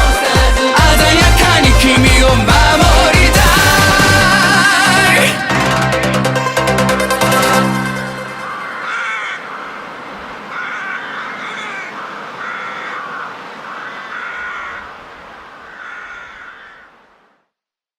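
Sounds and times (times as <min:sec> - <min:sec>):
crow cawing: 0:06.3 - 0:17.2.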